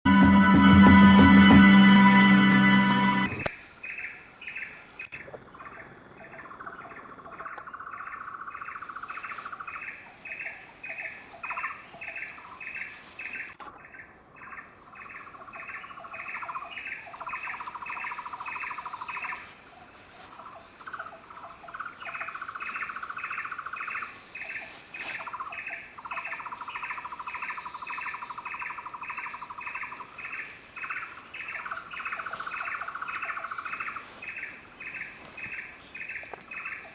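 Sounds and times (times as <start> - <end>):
buzzing trills: 0.1 - 3.5
high insect whine: 5.5 - 36.9.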